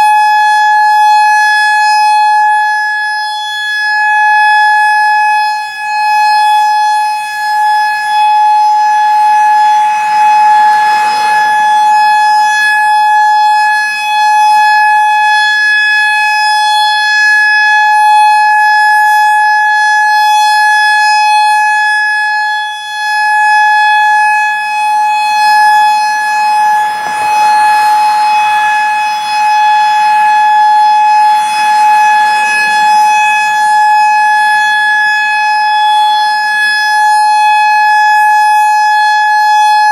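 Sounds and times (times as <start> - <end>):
steady siren tone: 0.0 - 39.9
rushing noise: 8.9 - 13.4, 24.7 - 35.3.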